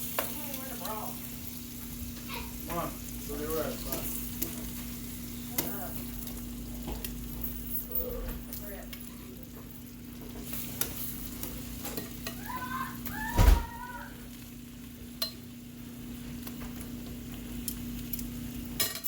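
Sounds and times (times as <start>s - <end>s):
chicken sizzling in frying: 0.0s - 19.0s
loud thump: 13.3s - 13.8s.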